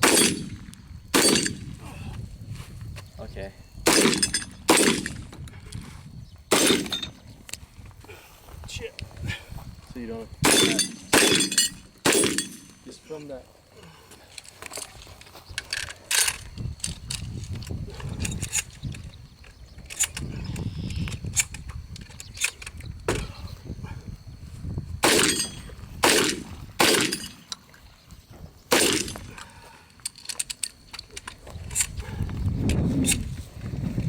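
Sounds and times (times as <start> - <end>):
shotgun shots: 0.0 - 1.6, 3.9 - 5.2, 6.5 - 7.1, 10.4 - 12.9, 25.0 - 27.4, 28.7 - 29.3.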